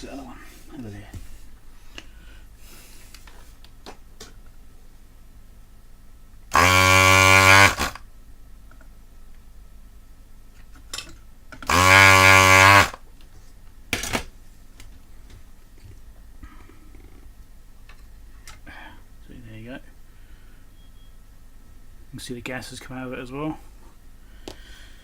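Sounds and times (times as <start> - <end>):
desoldering pump buzzing: 6.5 - 8.1, 11.6 - 13.0.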